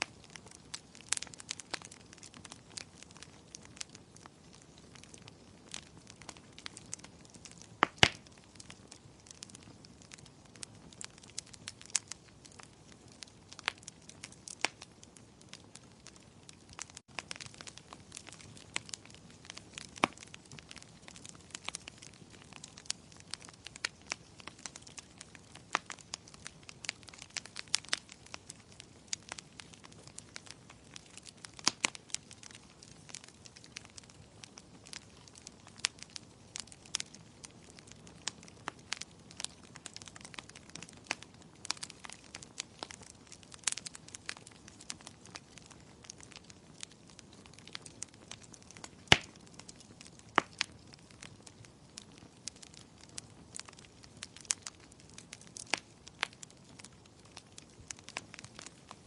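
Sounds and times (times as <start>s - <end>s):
wood fire crackling and popping: 0.0s - 59.0s.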